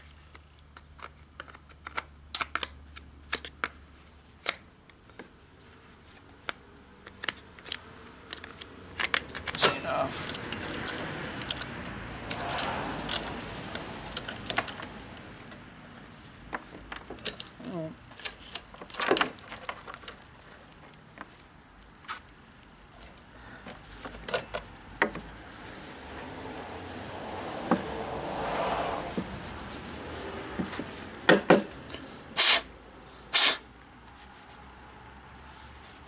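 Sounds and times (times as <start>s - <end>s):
scraping and rubbing: 28.4s - 31.0s.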